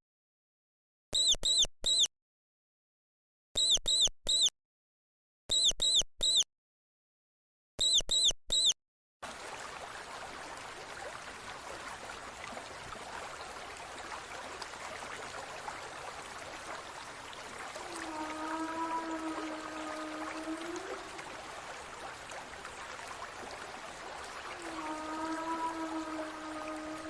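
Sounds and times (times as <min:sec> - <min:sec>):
small animal high-pitched chirps: 0:01.2 - 0:02.1, 0:03.6 - 0:04.5, 0:05.5 - 0:06.5, 0:07.8 - 0:08.8
running water: 0:09.2 - 0:27.0.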